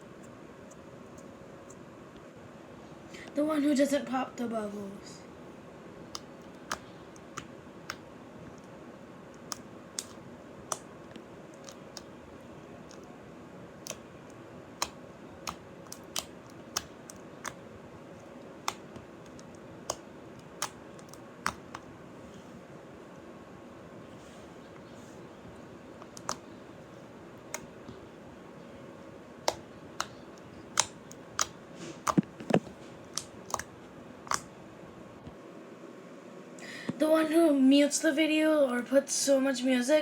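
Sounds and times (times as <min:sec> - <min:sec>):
slime clicking under fingers: 0:14.8 - 0:17.6, 0:29.4 - 0:34.5.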